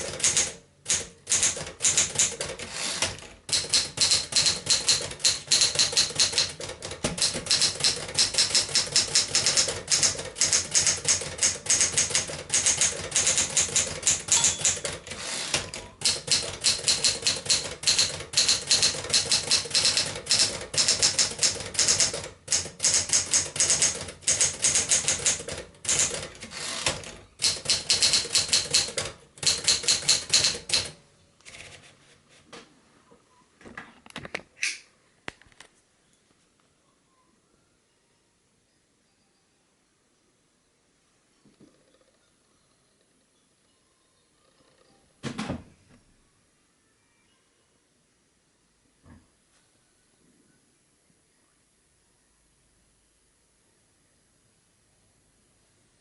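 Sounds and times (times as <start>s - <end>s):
typewriter keystrokes clacking: 0.0s - 31.0s.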